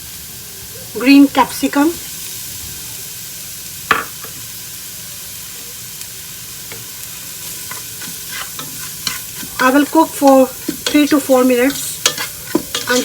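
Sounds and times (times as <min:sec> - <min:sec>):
vegetables sizzling in oil: 0:00.0 - 0:13.0
utensil knocking on pan: 0:03.9 - 0:04.1, 0:07.7 - 0:13.0.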